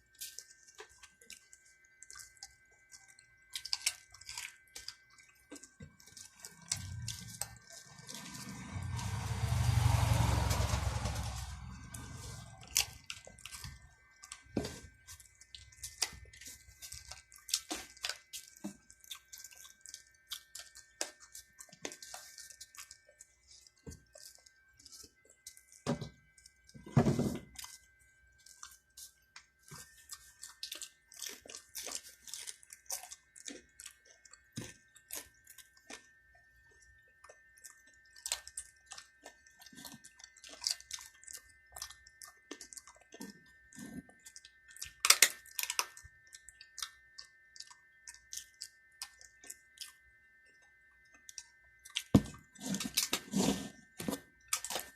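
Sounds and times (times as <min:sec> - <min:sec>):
chewing and eating mouth sounds: 0:00.1 - 0:54.9
low rumbling noise: 0:06.7 - 0:13.2.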